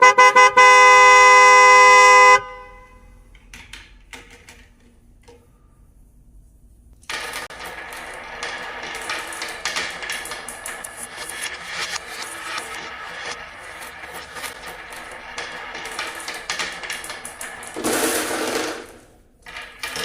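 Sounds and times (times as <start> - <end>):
loud horn blaring: 0.0 - 3.1
marbles clattering down wooden track: 7.0 - 20.0.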